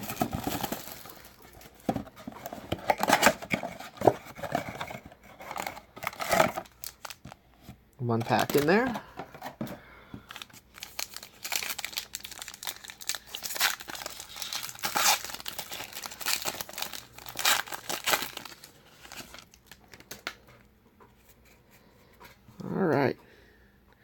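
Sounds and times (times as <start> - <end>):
wrapper crinkling and tearing: 0.0 - 7.4, 8.2 - 9.0, 10.3 - 20.4.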